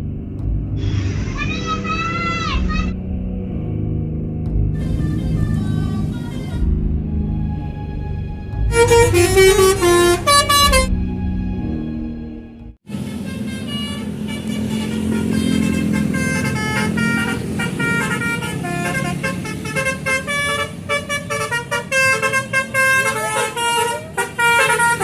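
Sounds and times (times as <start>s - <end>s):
low rumble: 0.0s - 12.8s
multi-tone bus horn playing a tune: 8.6s - 11.0s, 12.8s - 25.0s.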